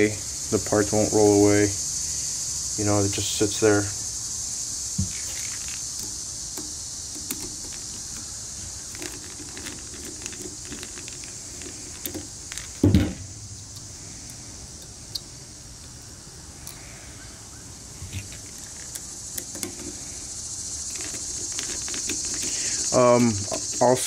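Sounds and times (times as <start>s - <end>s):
metal parts clicking and tapping: 8.9s - 12.8s.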